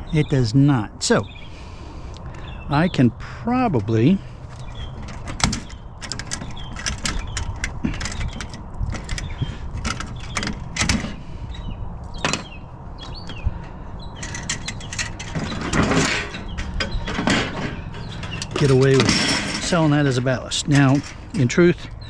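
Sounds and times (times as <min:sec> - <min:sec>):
steady low rumble: 0:00.0 - 0:22.0
scrap metal clanking: 0:03.7 - 0:11.3, 0:14.2 - 0:22.0
metal scraping rattle: 0:03.7 - 0:11.4, 0:12.2 - 0:22.0.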